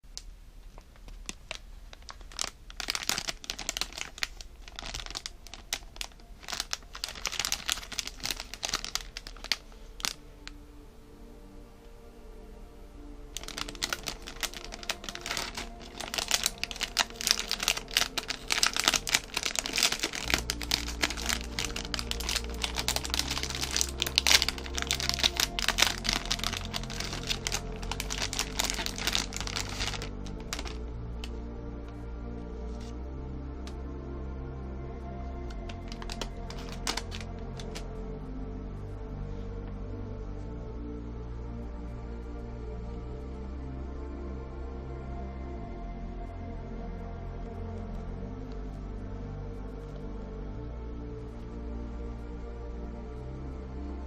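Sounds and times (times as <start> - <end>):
packaging crinkling and rustling: 0.7 - 10.6, 13.4 - 30.8, 35.5 - 37.8
background music: 1.4 - 54.0.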